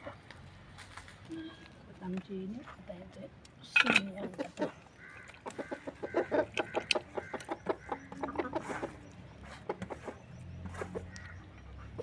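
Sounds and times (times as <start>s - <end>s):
chickens clucking: 4.2s - 12.0s.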